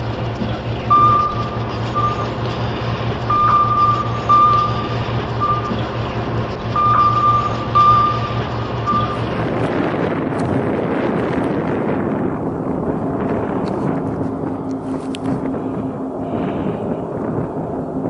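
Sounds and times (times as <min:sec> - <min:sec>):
heavy vehicle engine running: 0:00.0 - 0:18.0
electronic warning alarm beeping: 0:00.9 - 0:02.4, 0:03.2 - 0:06.0, 0:06.7 - 0:09.4.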